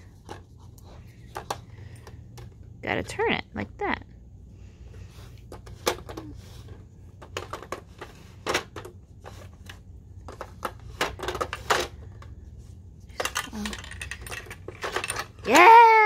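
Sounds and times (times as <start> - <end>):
puzzle pieces clicking and knocking: 13.1 - 15.8.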